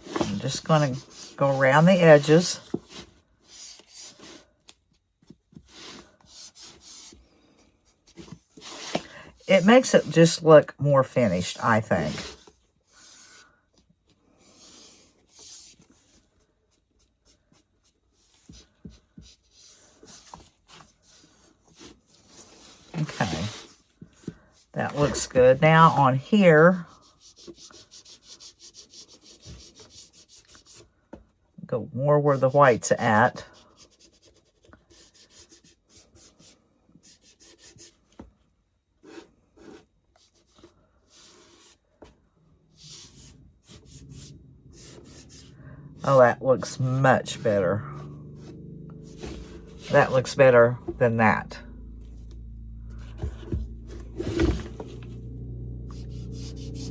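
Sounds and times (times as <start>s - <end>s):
faint rubbing and dabbing: 5.6s - 10.6s, 14.3s - 31.0s, 39.0s - 55.3s, 55.9s - 56.9s
ink rubbing strokes on wood: 42.8s - 47.8s, 55.9s - 56.9s.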